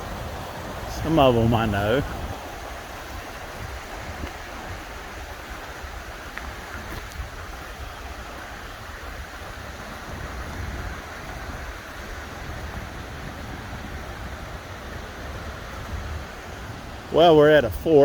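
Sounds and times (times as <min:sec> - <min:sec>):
creek water rushing: 0:00.0 - 0:18.0.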